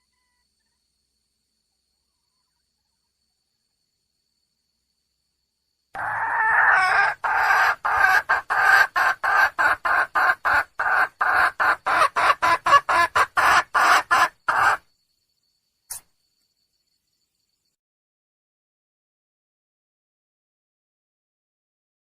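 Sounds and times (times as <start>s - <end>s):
hen clucking rapidly: 6.0s - 14.8s
hen drawn-out call: 6.0s - 14.8s.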